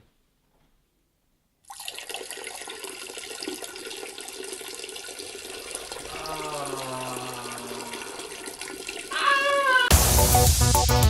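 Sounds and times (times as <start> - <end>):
water running: 1.7 - 10.4.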